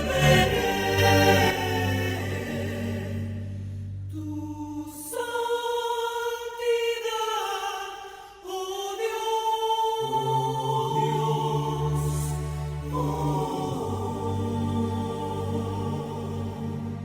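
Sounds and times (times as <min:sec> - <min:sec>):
choir holding long notes: 0:00.0 - 0:04.3, 0:09.0 - 0:17.0.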